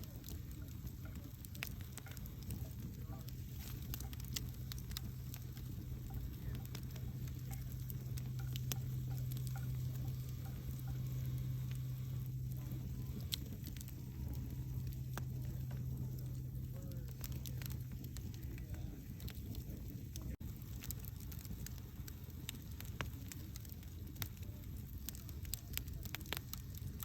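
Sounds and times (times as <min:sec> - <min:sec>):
campfire crackling and popping: 0:00.0 - 0:27.0
low drone: 0:00.1 - 0:20.3.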